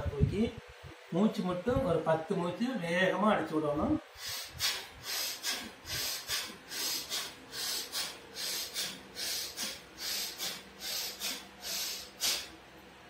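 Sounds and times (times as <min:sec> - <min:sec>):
man breathing rapidly: 0:04.1 - 0:12.6.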